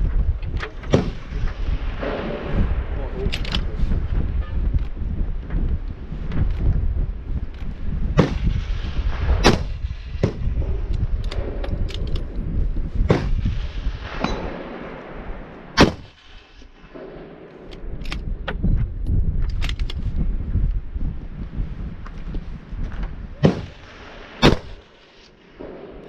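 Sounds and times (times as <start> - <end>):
wind rumble on microphone: 0.0 - 26.0
rifle shots: 8.2 - 10.6, 13.1 - 18.0, 23.4 - 26.0.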